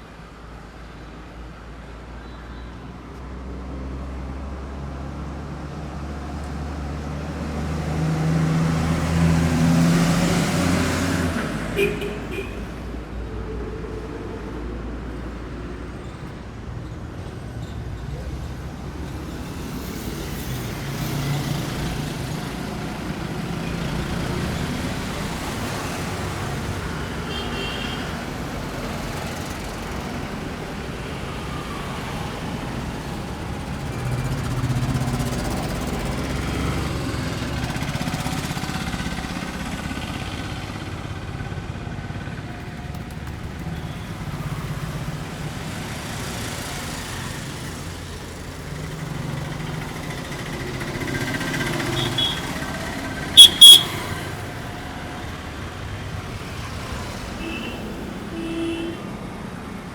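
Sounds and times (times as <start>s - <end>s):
road traffic rumble: 0.0s - 59.9s
brief high tone: 53.4s - 54.0s.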